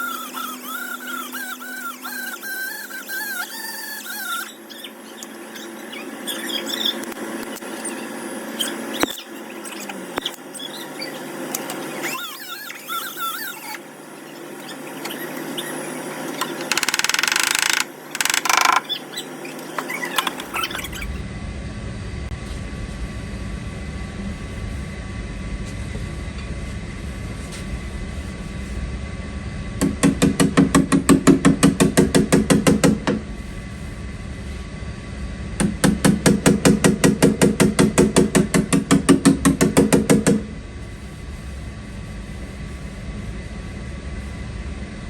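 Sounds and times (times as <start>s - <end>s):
hammer tapping on sheet metal: 29.8s - 33.2s, 35.6s - 40.5s.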